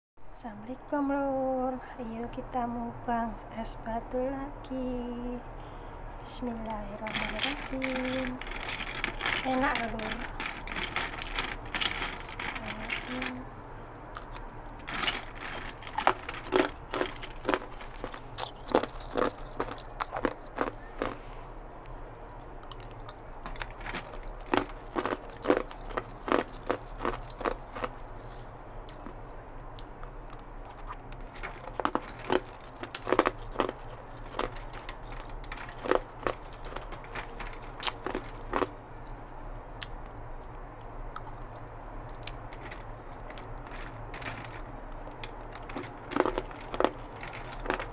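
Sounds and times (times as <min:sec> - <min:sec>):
ice cubes crunched by teeth: 0:07.0 - 0:13.3, 0:14.2 - 0:21.2, 0:22.7 - 0:29.2, 0:30.7 - 0:38.7, 0:42.1 - 0:47.9
chewing: 0:14.1 - 0:21.4, 0:22.2 - 0:47.9.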